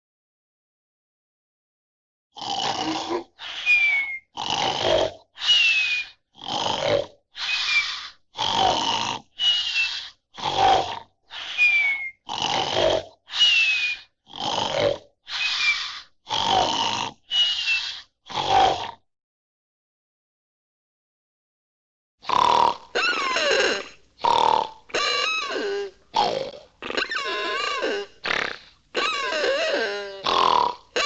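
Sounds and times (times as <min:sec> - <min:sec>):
animal-like grunting roars: 0:02.4 - 0:03.3, 0:04.4 - 0:05.2, 0:06.4 - 0:07.2, 0:10.4 - 0:11.1, 0:11.8 - 0:13.2, 0:14.3 - 0:17.2, 0:18.3 - 0:19.0, 0:22.3 - 0:30.9.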